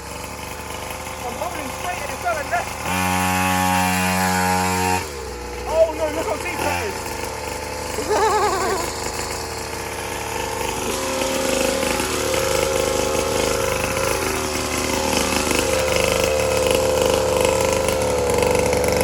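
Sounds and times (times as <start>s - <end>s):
small motorbike engine running: 0.0s - 19.0s.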